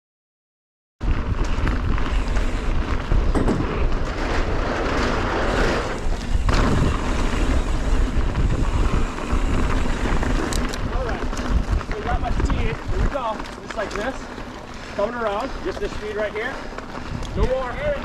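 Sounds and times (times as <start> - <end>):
wind on microphone: 1.0 - 13.4, 16.9 - 18.0
bike tyres rolling on dirt: 1.0 - 18.0.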